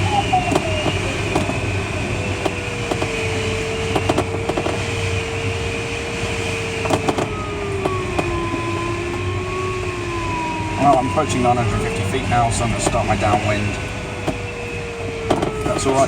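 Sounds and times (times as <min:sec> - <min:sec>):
airflow noise in glider cockpit: 0:00.0 - 0:16.0
sharp clicks and knocks: 0:02.4 - 0:03.2, 0:03.9 - 0:04.8, 0:06.8 - 0:09.3, 0:15.2 - 0:15.8.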